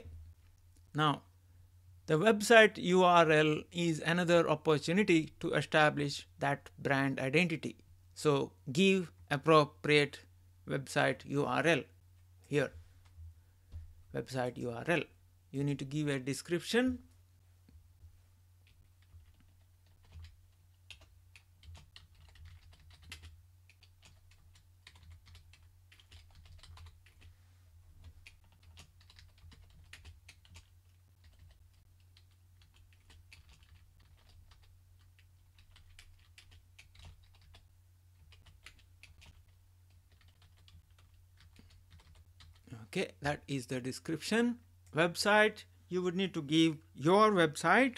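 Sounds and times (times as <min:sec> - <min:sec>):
keyboard typing: 0:18.6 - 0:27.3, 0:28.0 - 0:42.7.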